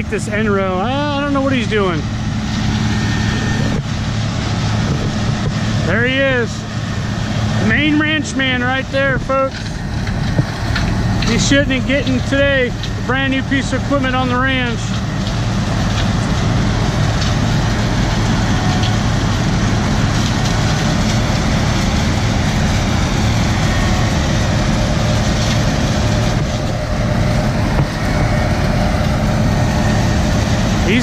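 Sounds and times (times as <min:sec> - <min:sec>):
diesel engine droning: 0:00.0 - 0:31.0.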